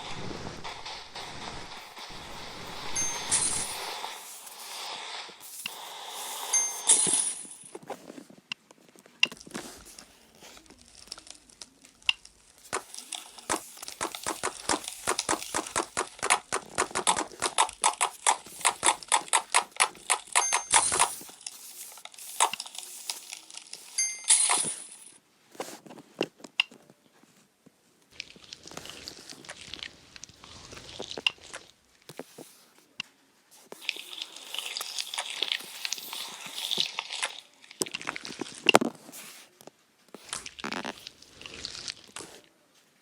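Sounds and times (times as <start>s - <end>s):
sticky clicks and pops: 10.8s - 23.8s.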